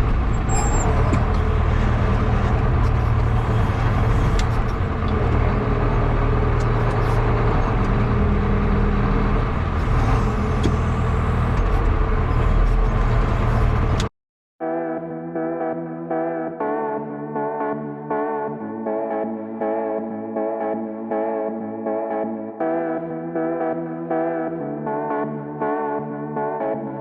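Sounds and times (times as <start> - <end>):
tractor engine running: 0.0 - 14.1.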